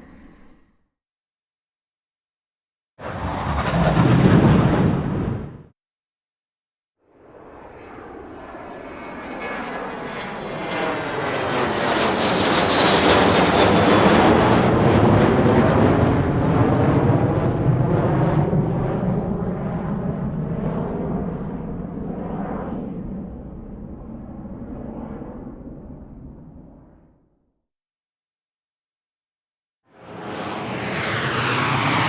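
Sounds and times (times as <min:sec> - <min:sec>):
jet aircraft flying past: 0:07.2 - 0:26.9, 0:30.0 - 0:32.0.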